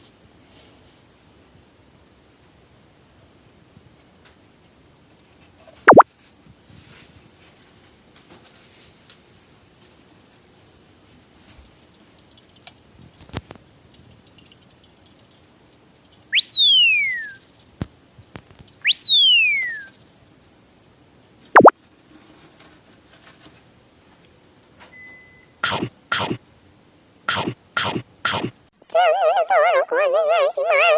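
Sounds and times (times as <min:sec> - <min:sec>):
falling-pitch pew tones: 0:16.4 - 0:17.4, 0:18.9 - 0:19.9, 0:25.6 - 0:26.4, 0:27.3 - 0:28.5
sharp downward swoop: 0:25.6 - 0:26.4, 0:27.3 - 0:28.6.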